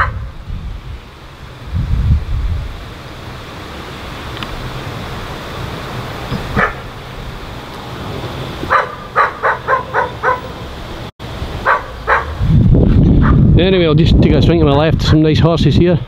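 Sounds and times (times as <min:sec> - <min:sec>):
dog barking: 0:00.0 - 0:00.2, 0:06.5 - 0:06.9, 0:08.7 - 0:10.6, 0:11.6 - 0:12.4, 0:13.2 - 0:13.4
farm machinery rumble: 0:01.1 - 0:14.9.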